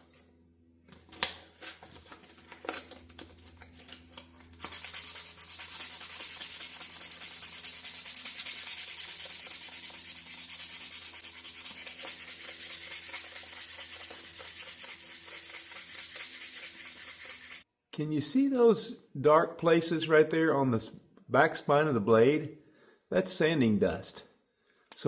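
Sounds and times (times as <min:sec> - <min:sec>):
sandpaper rubbing: 0:04.5 - 0:17.6.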